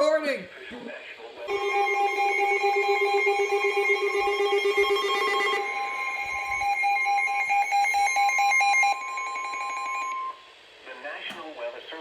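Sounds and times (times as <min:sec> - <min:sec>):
pulsing electronic alarm beeps: 0:01.5 - 0:10.4.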